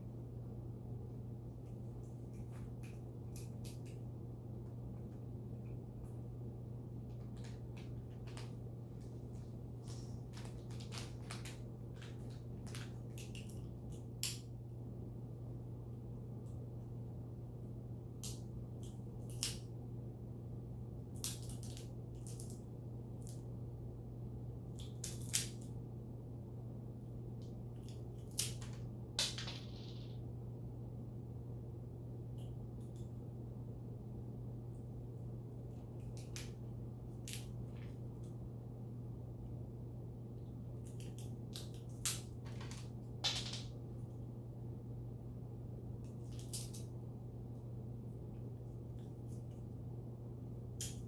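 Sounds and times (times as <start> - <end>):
steady low hum: 0.0 - 51.0
crinkling and crackling: 7.0 - 13.6.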